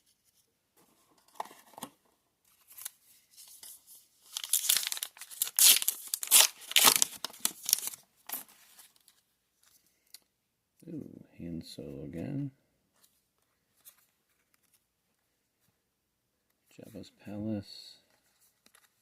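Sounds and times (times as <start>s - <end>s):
wrapper tearing and crinkling: 4.3s - 8.5s.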